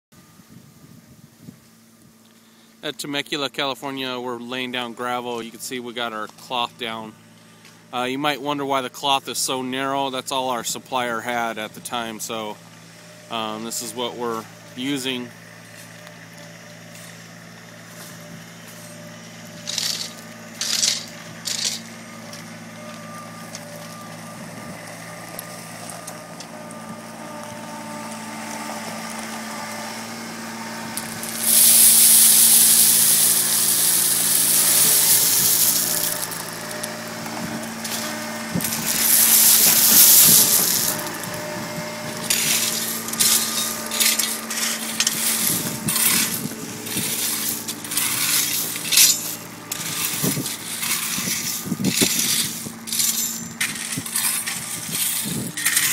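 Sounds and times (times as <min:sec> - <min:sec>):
engine idling: 0:10.6 - 0:55.9
gravel pouring and scraping: 0:13.2 - 0:16.1, 0:17.8 - 0:24.3, 0:25.0 - 0:55.9.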